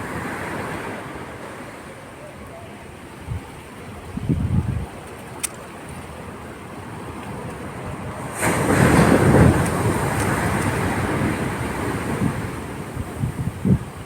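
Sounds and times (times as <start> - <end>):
wind buffeting microphone: 3.1 - 14.0
sharp click: 5.4 - 5.6.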